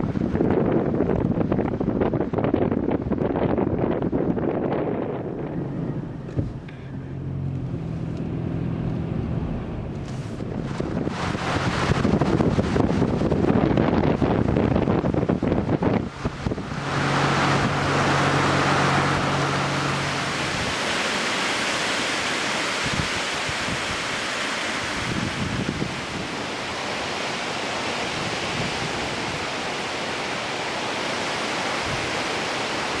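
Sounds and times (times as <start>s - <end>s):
wind rushing: 0.0s - 22.0s, 24.7s - 30.4s
low steady hum: 4.4s - 11.7s.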